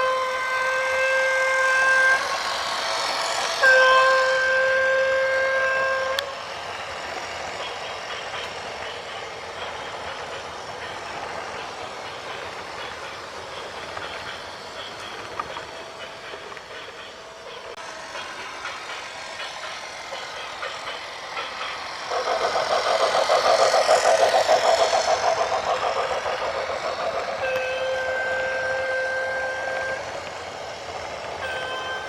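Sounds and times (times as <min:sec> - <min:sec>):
long horn blast: 0:00.0 - 0:02.4, 0:03.6 - 0:06.4, 0:27.4 - 0:30.1.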